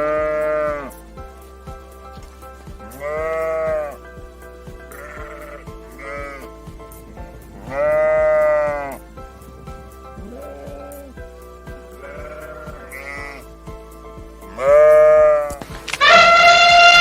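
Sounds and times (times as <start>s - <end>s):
sheep bleating: 0.0s - 0.9s, 2.9s - 4.0s, 4.9s - 6.5s, 7.6s - 9.0s, 10.2s - 11.1s, 12.0s - 13.5s, 14.6s - 17.0s
background music with steady beat: 0.0s - 17.0s.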